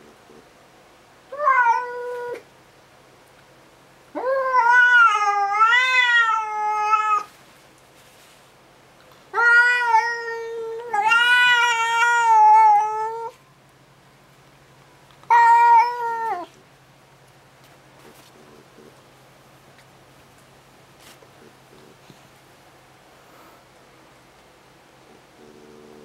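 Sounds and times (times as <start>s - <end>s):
cat yowling: 1.3s - 2.4s, 4.2s - 7.3s, 9.3s - 13.4s, 15.3s - 16.5s.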